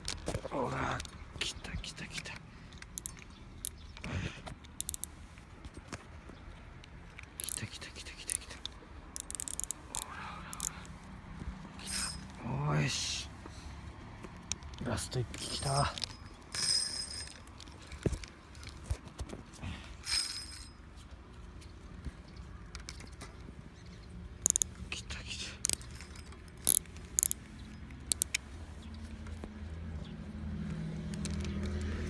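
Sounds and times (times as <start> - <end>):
fishing reel clicks and scrapes: 4.8 - 5.1, 9.2 - 10.7, 24.4 - 24.7, 25.6 - 27.4, 28.1 - 28.4.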